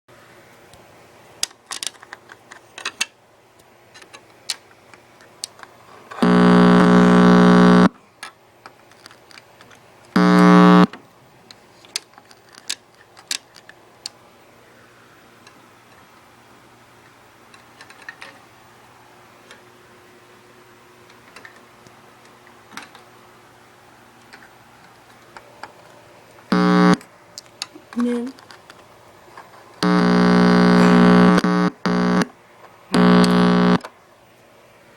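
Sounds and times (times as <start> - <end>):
loud steady buzzes: 6.2 - 8.0, 10.2 - 11.0, 26.5 - 27.0, 29.8 - 33.9.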